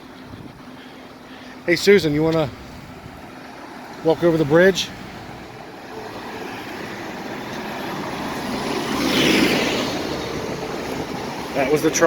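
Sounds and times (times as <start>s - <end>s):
vehicle passing by: 2.5s - 12.0s.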